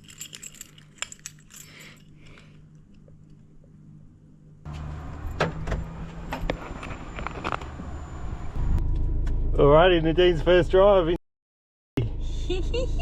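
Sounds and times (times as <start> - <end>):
low hum: 0.0 - 11.2
van engine running: 4.7 - 11.1.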